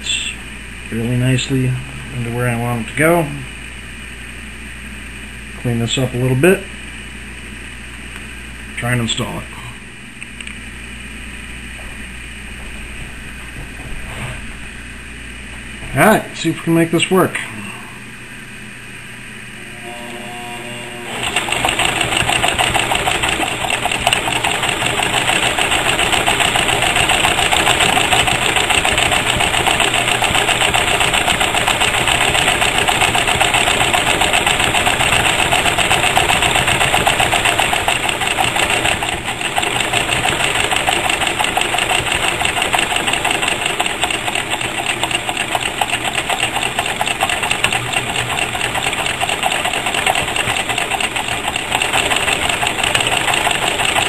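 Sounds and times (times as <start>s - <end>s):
sewing machine running: 21.0s - 54.0s.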